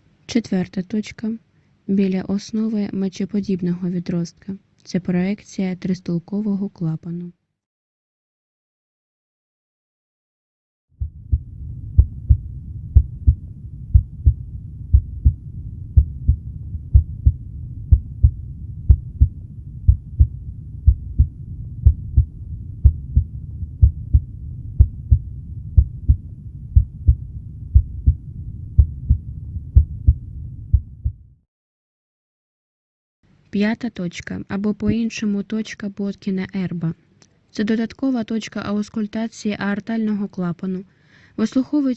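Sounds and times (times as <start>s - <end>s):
heartbeat through stethoscope: 11.0s - 31.3s
steady low rumble: 11.0s - 31.4s.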